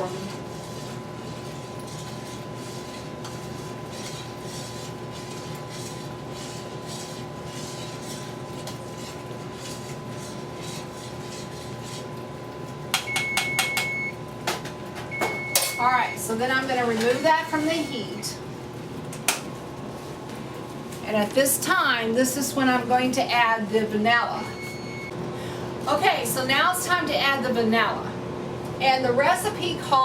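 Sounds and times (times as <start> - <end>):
kitchen timer beeping: 13.0 - 14.2, 15.1 - 16.3, 17.0 - 18.3, 24.4 - 25.2.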